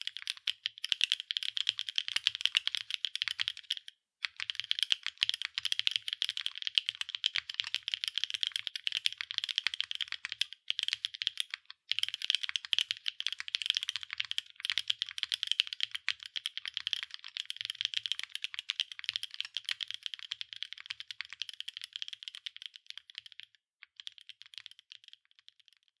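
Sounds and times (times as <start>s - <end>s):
mechanical keyboard typing: 0.0s - 23.4s.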